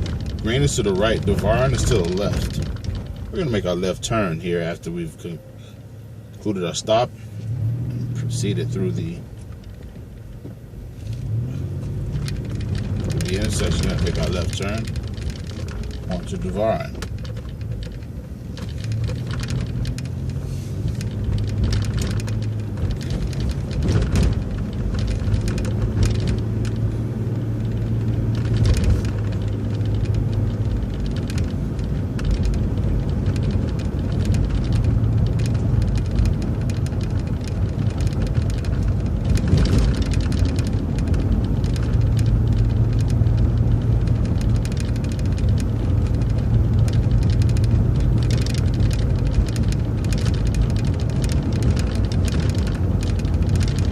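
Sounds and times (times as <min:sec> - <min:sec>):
sharp knocks and rattles: 0:00.0 - 0:03.9, 0:11.8 - 0:53.9
bus engine drone: 0:00.0 - 0:53.9.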